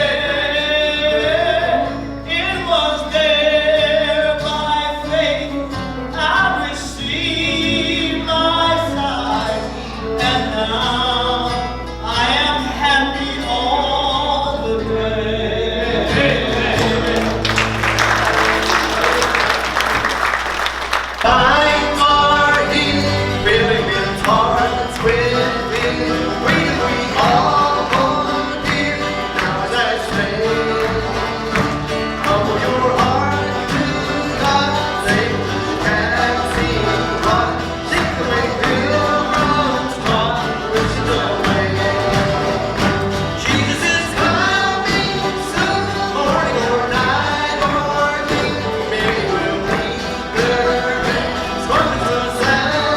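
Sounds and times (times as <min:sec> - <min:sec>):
band playing up-tempo gospel song: 0:00.0 - 0:52.9
audience applause: 0:16.2 - 0:52.9.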